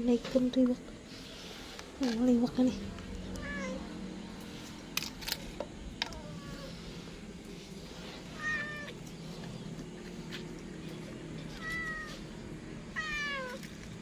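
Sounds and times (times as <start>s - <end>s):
cat meowing: 3.3s - 3.9s, 8.4s - 9.0s, 11.6s - 12.2s, 13.0s - 13.6s.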